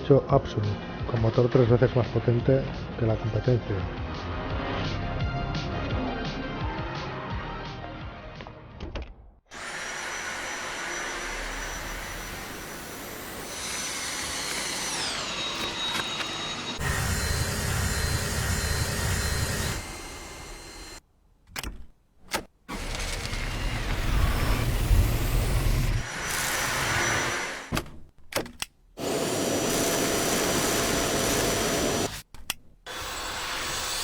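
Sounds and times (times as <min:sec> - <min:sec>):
vacuum cleaner motor whine: 0:09.5 - 0:21.0, 0:22.7 - 0:27.8, 0:29.0 - 0:32.2.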